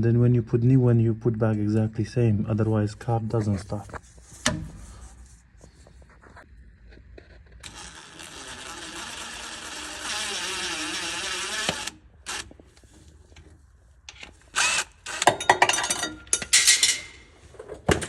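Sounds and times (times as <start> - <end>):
handheld power tool running: 7.6 - 12.6, 14.1 - 15.4.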